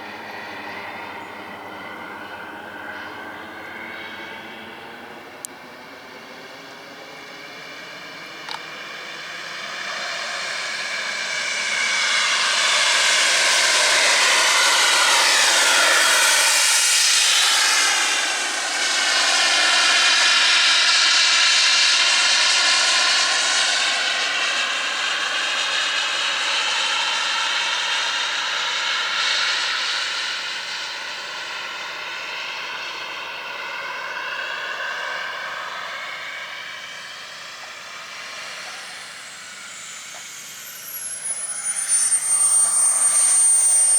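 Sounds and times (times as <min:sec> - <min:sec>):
jet turbine whoosh and whine: 0:00.0 - 0:43.9.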